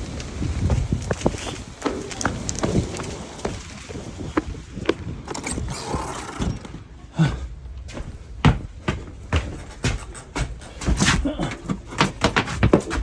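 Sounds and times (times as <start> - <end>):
wood fire crackling: 0.0 - 4.4
low fire rumble: 0.0 - 7.9.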